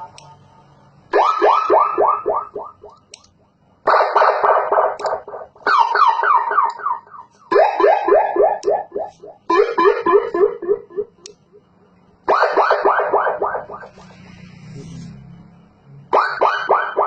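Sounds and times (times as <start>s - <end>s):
electronic siren through loudspeaker: 1.1s - 2.9s, 3.9s - 11.2s, 12.3s - 14.0s, 16.1s - 17.0s.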